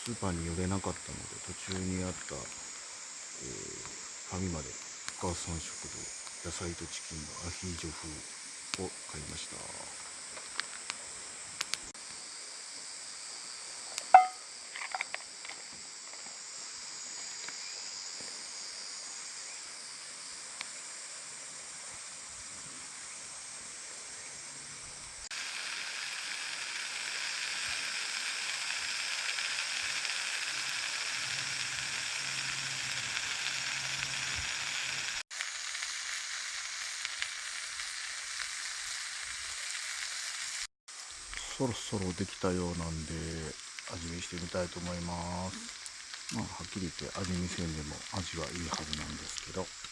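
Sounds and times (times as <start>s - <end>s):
food sizzling in oil: 0.0s - 23.6s, 24.9s - 49.9s
metal clink: 14.2s - 14.4s.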